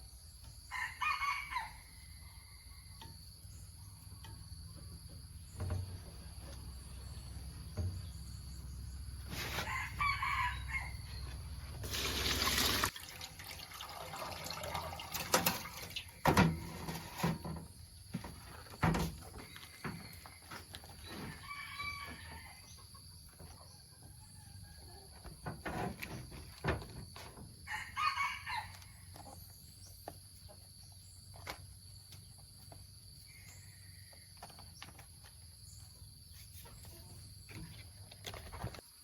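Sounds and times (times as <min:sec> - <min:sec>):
rooster crowing: 0:00.7 - 0:02.8, 0:09.6 - 0:11.2, 0:21.2 - 0:22.7, 0:27.7 - 0:28.9.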